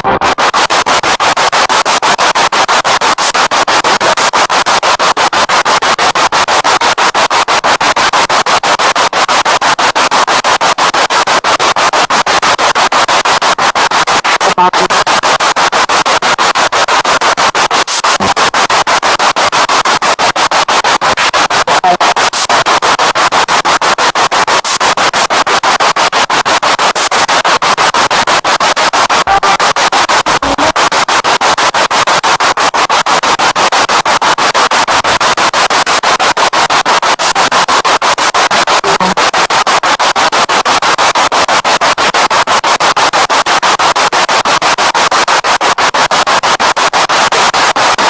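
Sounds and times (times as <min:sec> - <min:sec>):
pulsing radio static: 0:00.0 - 0:48.0
broadcast sound fragments: 0:14.4 - 0:15.1, 0:38.7 - 0:39.3.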